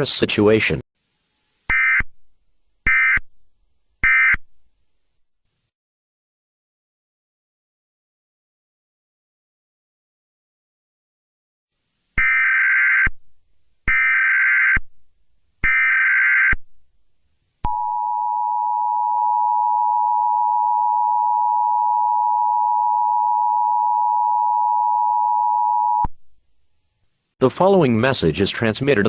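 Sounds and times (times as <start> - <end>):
two-tone attention signal: 17.7 - 26.1.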